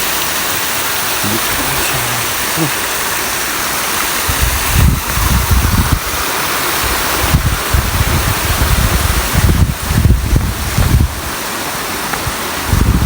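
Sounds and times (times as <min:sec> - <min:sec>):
stream water rushing: 0:00.0 - 0:13.0
wind buffeting microphone: 0:04.2 - 0:13.0.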